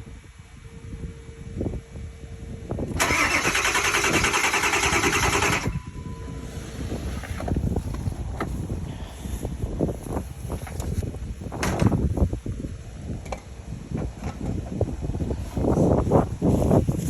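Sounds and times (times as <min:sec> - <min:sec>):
starter cranking engine: 0:02.9 - 0:05.9.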